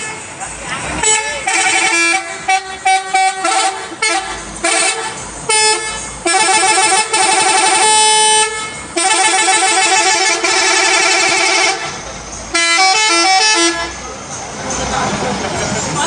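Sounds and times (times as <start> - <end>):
musical air horn melody: 1.0 - 11.9, 12.5 - 14.0.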